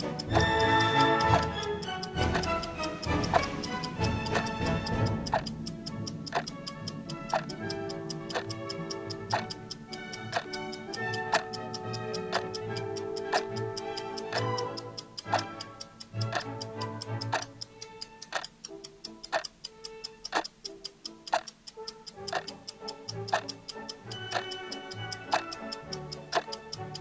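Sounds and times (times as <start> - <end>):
background music: 0.0 - 27.0
clock ticking: 0.0 - 27.0.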